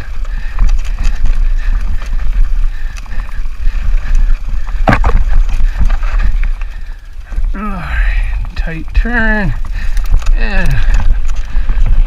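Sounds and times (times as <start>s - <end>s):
bike striking rock: 0.0s - 7.6s
bike rattling over rocks: 0.0s - 12.0s
wind rumble on microphone: 0.0s - 12.0s.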